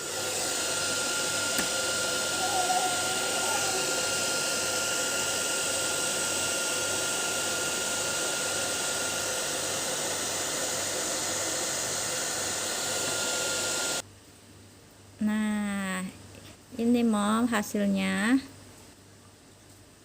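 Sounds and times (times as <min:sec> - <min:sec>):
electric blower motor running: 0:00.0 - 0:14.0.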